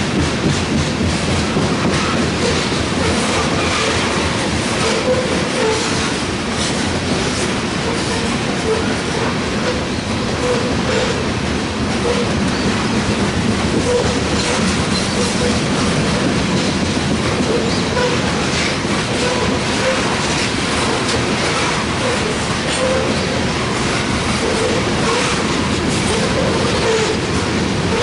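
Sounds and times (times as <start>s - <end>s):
train wheels clicking over rail joints: 0.0s - 28.0s
train wheels squealing: 13.8s - 15.6s.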